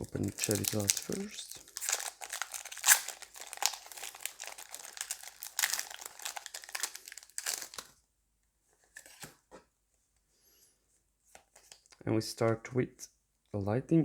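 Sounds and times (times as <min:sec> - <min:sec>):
foil wrapper crinkling: 0:00.0 - 0:08.0.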